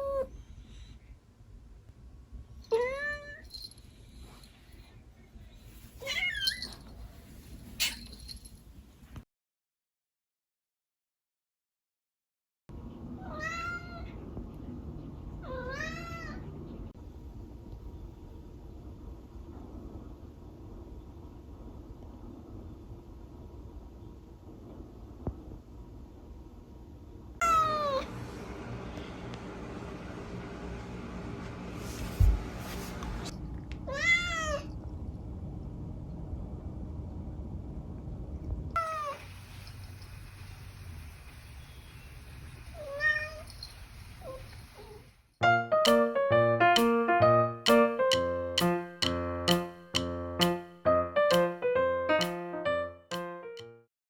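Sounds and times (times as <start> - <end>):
low background hum: 12.7 - 48.5
kitten meowing: 27.4 - 28.1.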